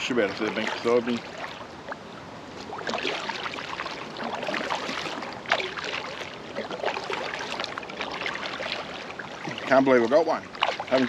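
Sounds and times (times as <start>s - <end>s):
paddle stroke splashes: 0.0s - 11.0s
water splashing and trickling: 0.0s - 11.0s.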